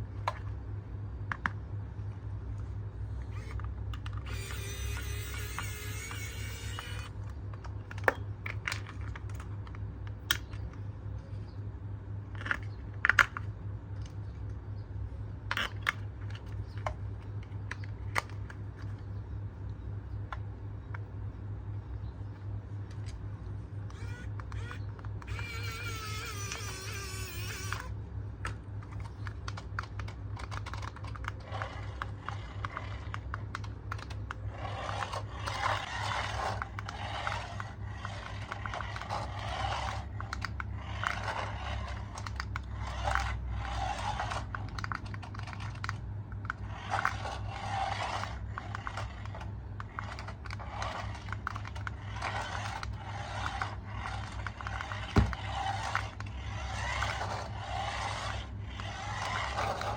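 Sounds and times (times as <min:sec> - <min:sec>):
low steady hum: 0:00.0 - 0:59.9
rapid clicking and scraping: 0:02.6 - 0:11.5, 0:22.3 - 0:59.9.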